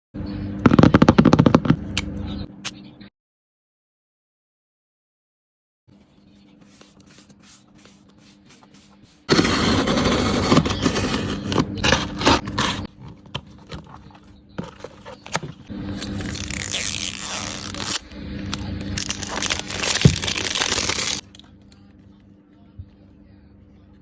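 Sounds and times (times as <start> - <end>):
packaging scraping and rustling: 7.2 - 18.0, 18.9 - 21.2.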